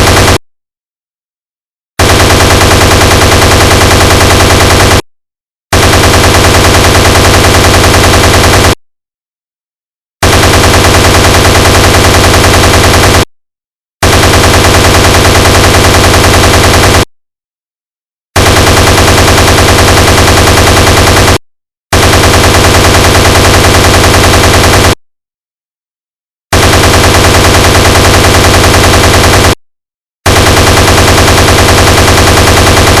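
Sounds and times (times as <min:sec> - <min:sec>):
heavy machine gun firing bursts: 0:00.0 - 0:00.4, 0:02.0 - 0:05.0, 0:05.7 - 0:08.8, 0:10.2 - 0:13.3, 0:14.0 - 0:17.1, 0:18.4 - 0:25.0, 0:26.5 - 0:29.6, 0:30.3 - 0:33.0.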